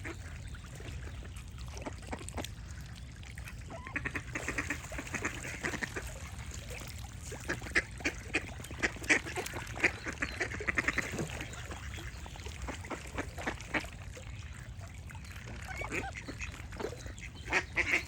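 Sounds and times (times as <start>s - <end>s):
ducks quacking: 3.7s - 6.1s, 7.4s - 13.9s, 15.5s - 18.0s.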